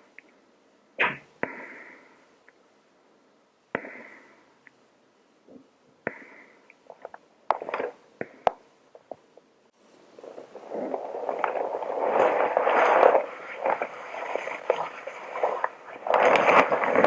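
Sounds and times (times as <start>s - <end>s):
long breath: 1.4s - 2.4s, 3.8s - 4.6s, 6.1s - 6.7s
protective suit rustling and clicking: 9.9s - 17.0s.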